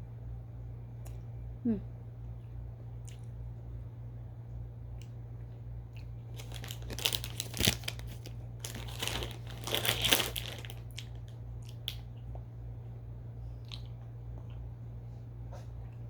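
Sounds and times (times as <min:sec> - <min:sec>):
plastic wrapper crinkling and tearing: 0:06.3 - 0:11.4.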